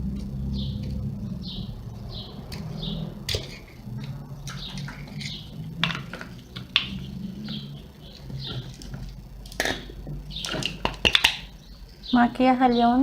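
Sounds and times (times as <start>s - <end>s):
metallic parts clicking and knocking: 3.3s - 11.5s.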